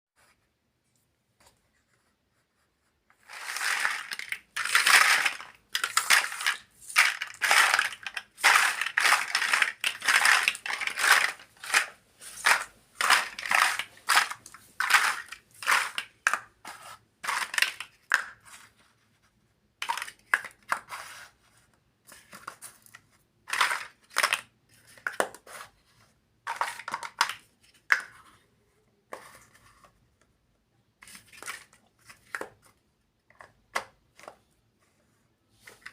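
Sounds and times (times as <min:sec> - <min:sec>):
plastic packaging crinkling: 0:03.3 - 0:16.1.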